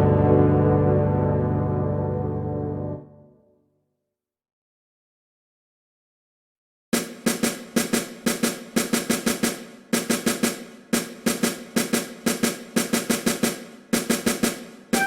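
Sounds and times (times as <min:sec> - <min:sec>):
snare drum pattern: 0:07.0 - 0:15.0.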